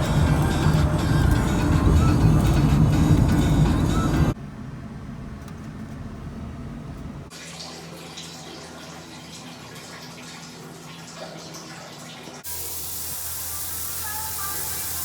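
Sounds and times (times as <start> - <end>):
water running: 7.3 - 15.0.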